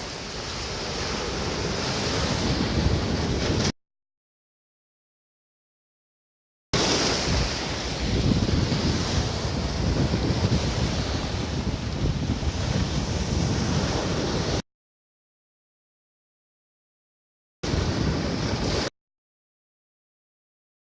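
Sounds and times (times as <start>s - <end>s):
surf breaking on stony beach: 0.0s - 3.7s, 6.8s - 14.6s, 17.6s - 18.9s
wind buffeting microphone: 7.1s - 14.6s.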